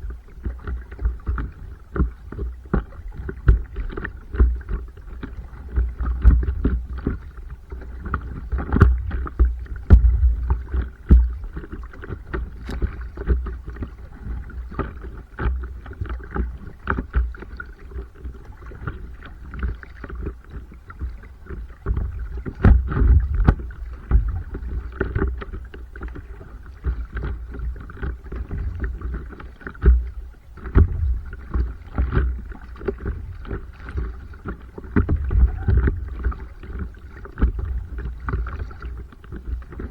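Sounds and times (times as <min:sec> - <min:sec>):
paddle strokes: 0:00.0 - 0:39.9
water slapping against board: 0:08.1 - 0:13.5, 0:21.9 - 0:26.2, 0:26.8 - 0:39.9
heavy low rumble: 0:35.0 - 0:36.6.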